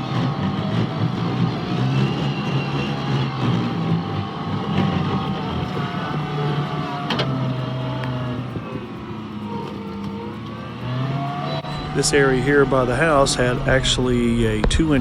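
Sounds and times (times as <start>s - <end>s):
skid steer engine running: 0.0s - 15.0s
wavering whine: 0.0s - 15.0s.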